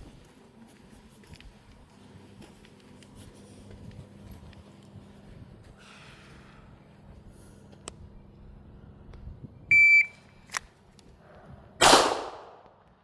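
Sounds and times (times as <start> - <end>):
shot timer beep: 9.7 - 10.2
pistol shot: 11.8 - 12.8.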